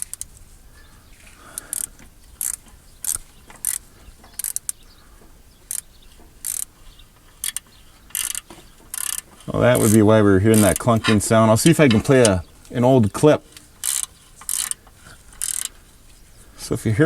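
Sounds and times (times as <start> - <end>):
hand ratchet clicking: 0.0 - 0.3, 1.5 - 4.8, 5.6 - 12.4, 13.5 - 15.8.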